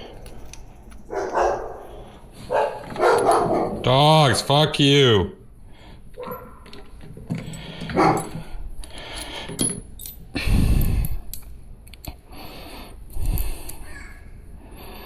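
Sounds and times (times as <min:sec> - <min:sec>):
small metal parts clinking: 0:06.2 - 0:12.2.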